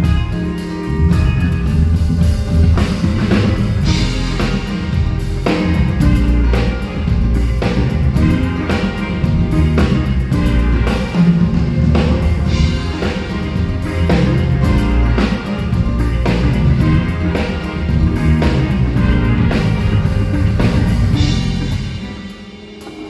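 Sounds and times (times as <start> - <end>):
drum kit beat: 0.0 - 23.0
live band playing: 0.0 - 23.0.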